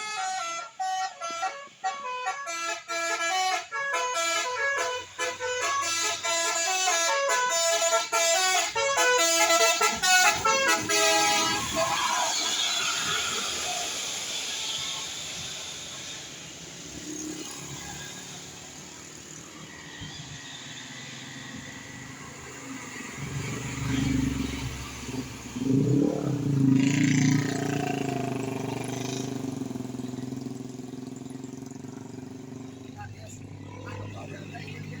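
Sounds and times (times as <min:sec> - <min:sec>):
road traffic: 0:00.0 - 0:35.0
vehicle engine passing and revving: 0:10.3 - 0:35.0.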